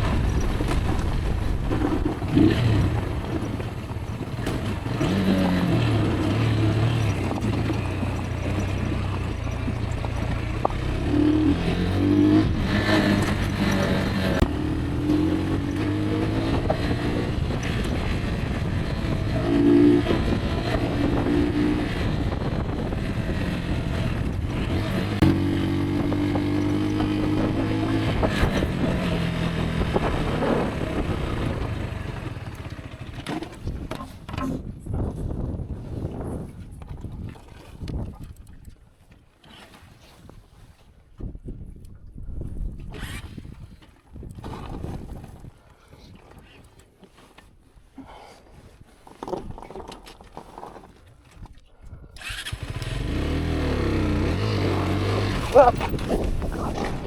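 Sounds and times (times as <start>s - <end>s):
motorcycle engine revving: 0.0s - 34.1s, 52.2s - 57.0s.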